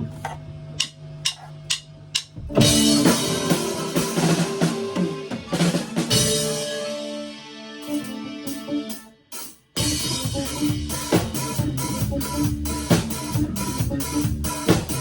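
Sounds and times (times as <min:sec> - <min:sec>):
drum kit: 0:00.8 - 0:15.0
live band playing: 0:02.5 - 0:09.1, 0:09.8 - 0:15.0.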